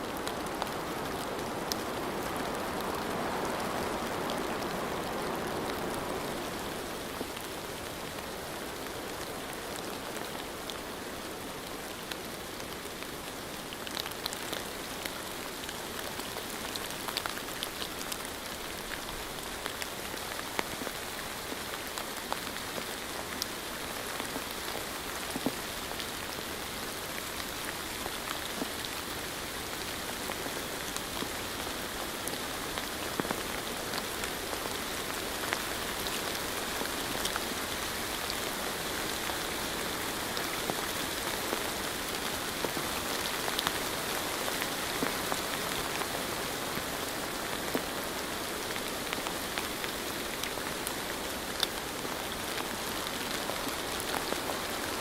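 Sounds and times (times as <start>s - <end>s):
rain falling: 0.0s - 55.0s.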